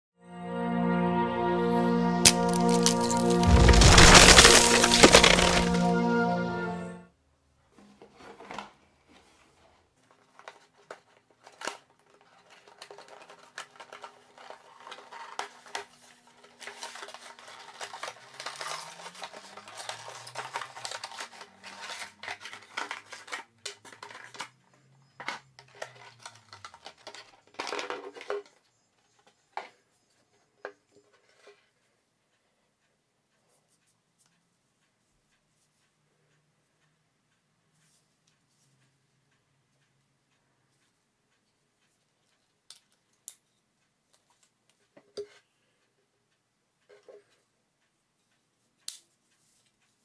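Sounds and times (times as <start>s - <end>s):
cardboard and plastic packaging rustling: 2.3s - 6.0s, 7.8s - 28.5s.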